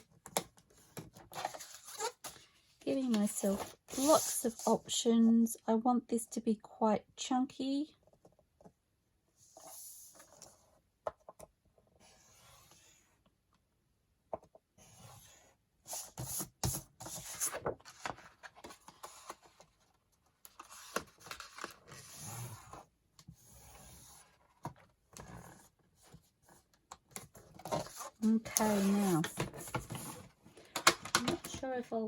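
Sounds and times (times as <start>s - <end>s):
paper rustling: 27.6s - 30.3s.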